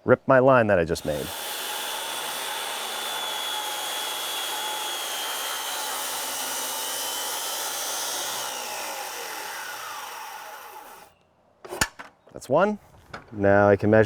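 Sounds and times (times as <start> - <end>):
circular saw cutting wood: 0.9 - 11.1.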